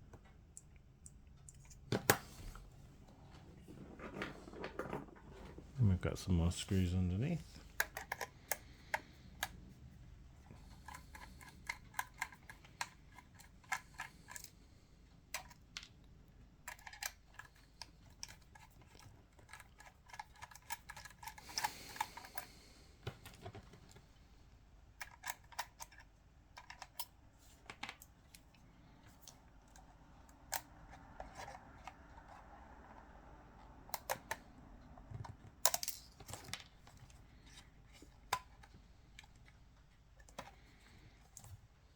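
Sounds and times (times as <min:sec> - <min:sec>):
small metal and plastic parts handled: 0:10.4 - 0:14.6, 0:16.6 - 0:24.1, 0:25.0 - 0:32.4, 0:35.1 - 0:41.6.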